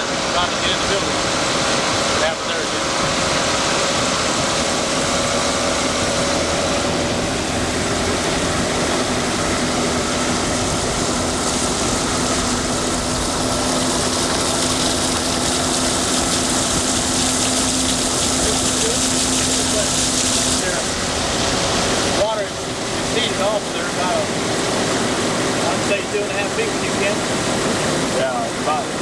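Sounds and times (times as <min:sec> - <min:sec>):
hiss of water and air: 0:00.0 - 0:22.2
boat motor running: 0:00.0 - 0:29.0.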